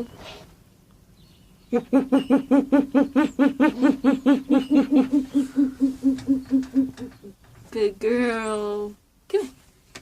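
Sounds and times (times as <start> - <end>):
owl hooting: 1.7 - 7.4.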